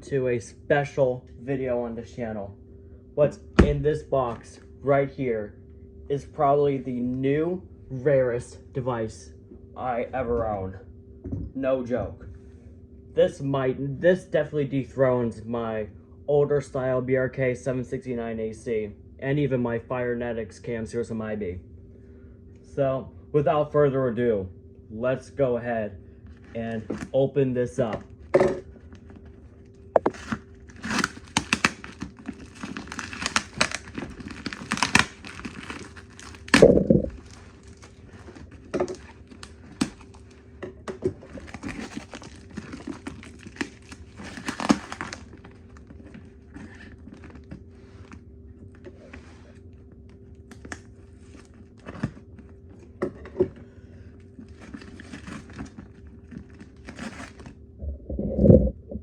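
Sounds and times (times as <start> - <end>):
knocks on cardboard: 3.6 - 3.9
heavy thud: 3.6 - 4.0
tearing and crinkling packing material: 30.0 - 48.2, 54.4 - 57.6.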